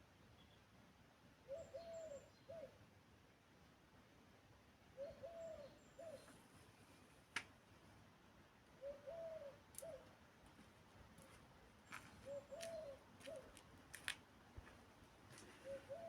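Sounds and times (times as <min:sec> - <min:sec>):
dove cooing: 0:01.5 - 0:02.8, 0:05.0 - 0:06.4, 0:08.8 - 0:10.1, 0:12.2 - 0:13.6, 0:15.4 - 0:16.0.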